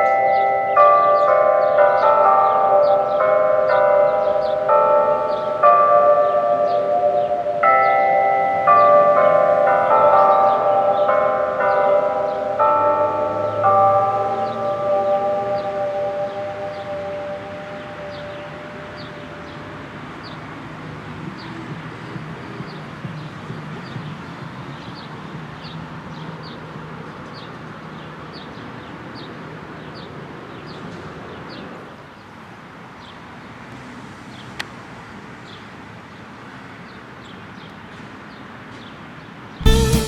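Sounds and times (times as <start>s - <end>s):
bell tone: 0.0s - 19.6s, 39.6s - 40.0s
road traffic rushing: 0.0s - 40.0s.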